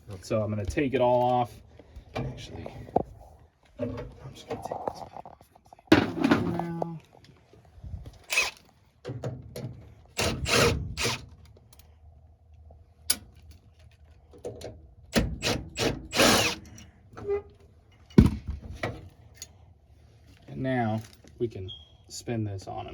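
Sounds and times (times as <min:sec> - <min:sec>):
tool scraping or ratcheting: 0:08.2 - 0:08.6, 0:10.2 - 0:11.3, 0:15.4 - 0:16.8.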